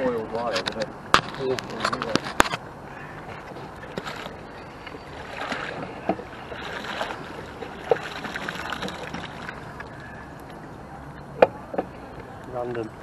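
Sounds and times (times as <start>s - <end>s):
wet bag rustling and scraping: 3.4s - 9.8s.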